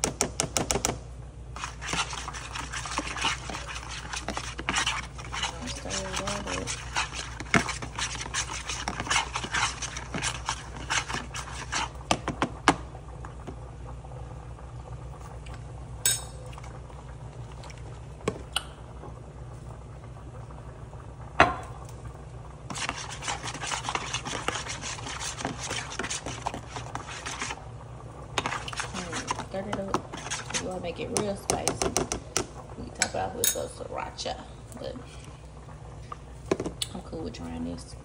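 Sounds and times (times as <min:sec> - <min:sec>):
utensil scraping bowl: 0:01.6 - 0:12.4, 0:22.7 - 0:27.6, 0:28.4 - 0:32.5.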